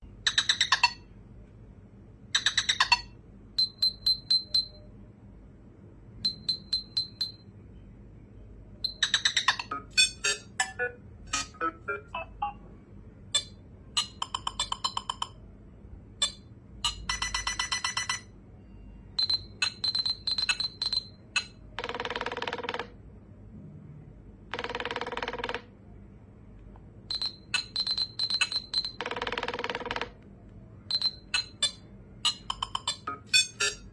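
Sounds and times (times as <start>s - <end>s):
electronic clicks and blips: 8.8s - 12.6s, 19.2s - 21.6s, 30.9s - 33.9s.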